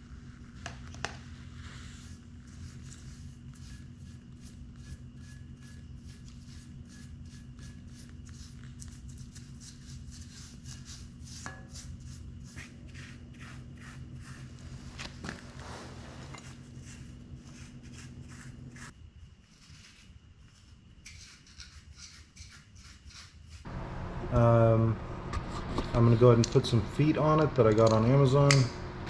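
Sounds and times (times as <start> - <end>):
low electrical hum: 0.0 - 21.1, 23.6 - 29.0
brush scrubbing metal: 1.7 - 14.8, 15.6 - 18.9, 19.5 - 23.6.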